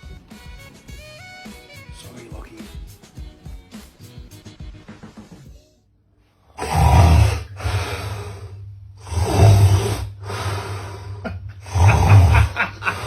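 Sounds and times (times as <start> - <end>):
man snoring loudly: 6.6 - 13.0.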